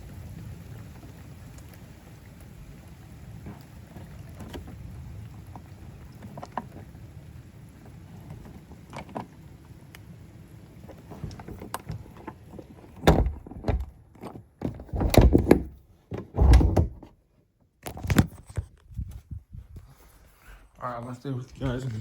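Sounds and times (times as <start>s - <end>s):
loud sharp thumps and knocks: 14.6s - 17.1s.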